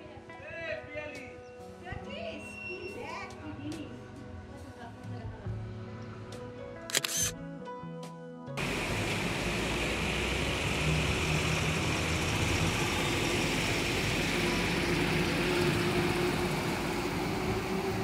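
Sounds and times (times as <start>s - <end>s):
vehicle engine hum: 8.6s - 18.0s.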